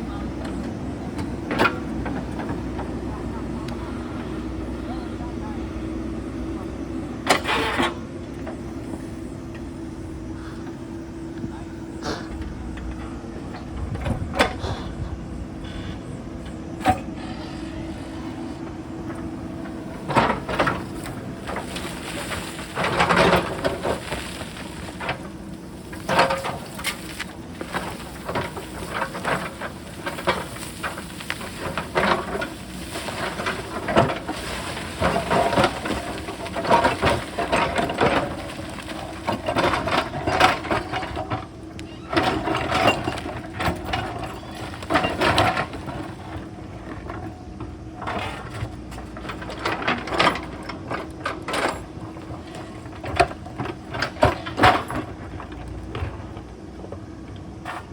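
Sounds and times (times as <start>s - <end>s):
diesel engine running: 0.0s - 57.8s
rocks clattering: 19.7s - 41.2s
bucket scraping against stone: 20.0s - 40.7s.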